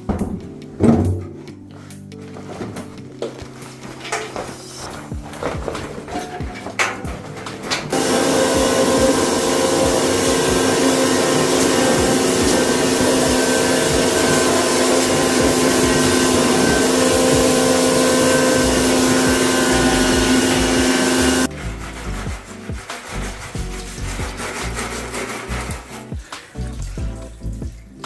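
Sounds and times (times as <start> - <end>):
machine motor humming: 6.4 - 21.5.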